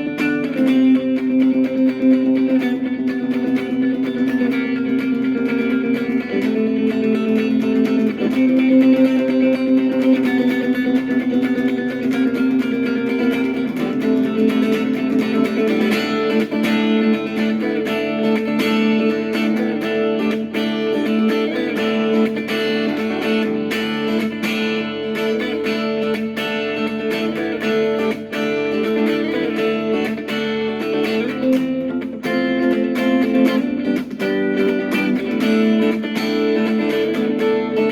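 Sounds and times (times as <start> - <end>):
instrumental guitar music: 0.0 - 37.9.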